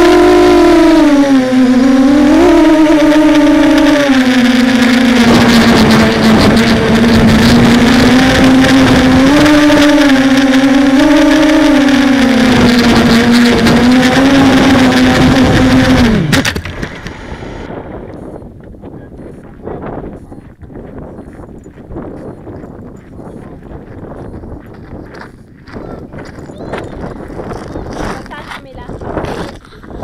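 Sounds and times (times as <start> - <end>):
drone motors buzzing: 0.0 - 20.3
wind noise on microphone: 0.0 - 30.0.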